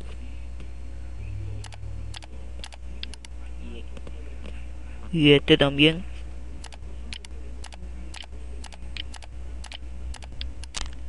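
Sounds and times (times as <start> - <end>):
keyboard typing clicks: 1.6 - 3.3, 6.6 - 11.0.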